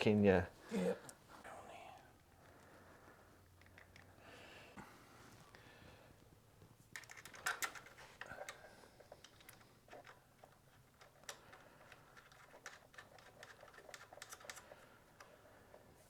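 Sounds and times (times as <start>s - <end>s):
hand tools clicking and tapping: 6.9s - 15.8s.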